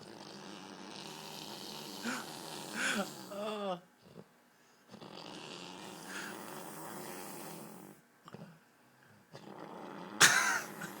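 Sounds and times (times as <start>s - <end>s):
person snoring heavily: 0.0s - 3.7s, 5.0s - 8.0s, 9.4s - 11.0s.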